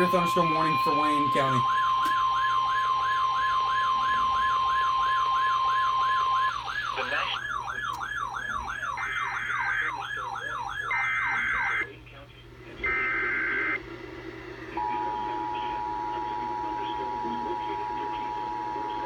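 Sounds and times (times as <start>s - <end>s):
steady alert tone: 0.0s - 7.6s
warbling siren alarm: 0.0s - 11.9s, 12.8s - 13.8s.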